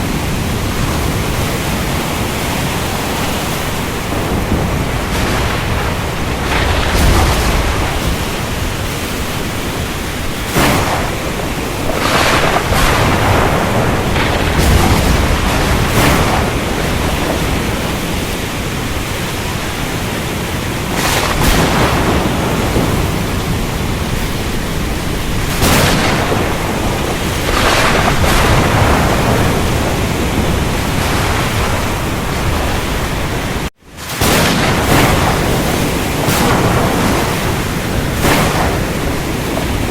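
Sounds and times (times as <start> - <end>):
rain: 0.0 - 39.9
thunder: 0.0 - 39.9
waves breaking: 0.0 - 39.9
wind: 0.0 - 39.9.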